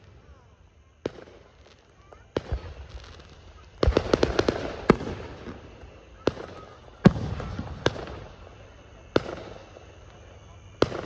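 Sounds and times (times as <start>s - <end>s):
fireworks exploding: 0.0s - 11.0s
rumble after explosions: 2.3s - 11.0s.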